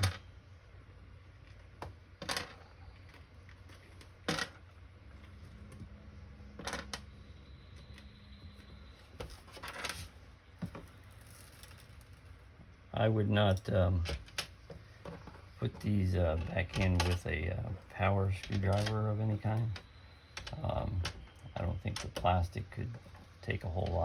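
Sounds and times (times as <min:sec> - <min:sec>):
quiet handling: 0:01.3 - 0:24.0.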